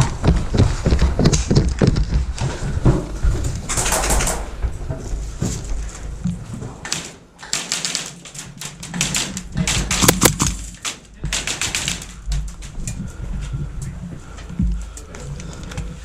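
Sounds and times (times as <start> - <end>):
airsoft gunshots: 9.2 - 10.7.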